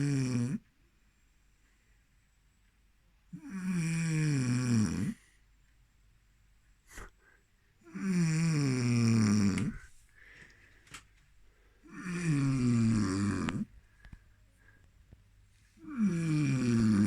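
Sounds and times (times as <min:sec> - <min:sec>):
person snoring: 0:00.0 - 0:00.6, 0:03.4 - 0:05.3, 0:07.8 - 0:09.9, 0:11.8 - 0:13.7, 0:15.8 - 0:17.0.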